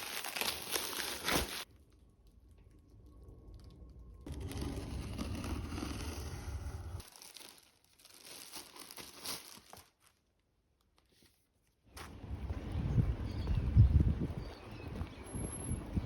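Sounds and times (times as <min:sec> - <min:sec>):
crinkling and rustling: 0:00.0 - 0:06.2, 0:07.0 - 0:12.6
scattered crackles: 0:00.0 - 0:11.1.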